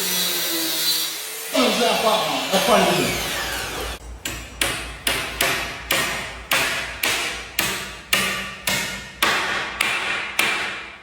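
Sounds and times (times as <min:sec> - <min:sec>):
hammer driving nails into wood: 0:04.3 - 0:11.0.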